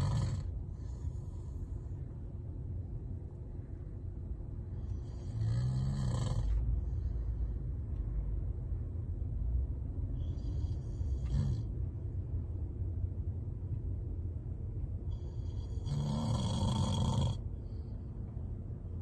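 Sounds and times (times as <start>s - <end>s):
person snoring: 0.0s - 0.5s, 5.1s - 6.6s, 15.4s - 17.4s
steady low rumble: 0.0s - 19.0s.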